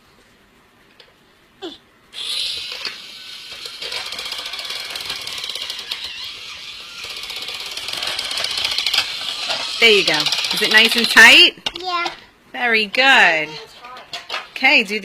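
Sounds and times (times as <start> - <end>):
toy drill ratcheting click: 2.2 - 11.4.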